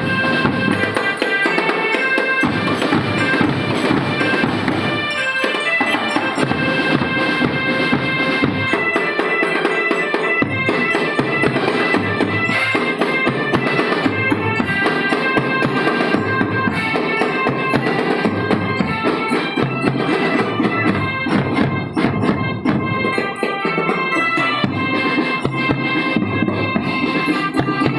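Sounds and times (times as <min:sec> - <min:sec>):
melody of held notes: 0:00.0 - 0:27.9
snare and bass drums: 0:00.0 - 0:27.9.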